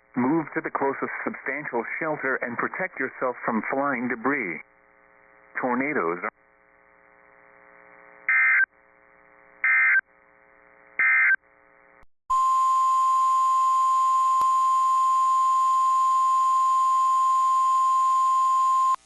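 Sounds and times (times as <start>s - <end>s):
radio hiss: 0.0s - 10.0s.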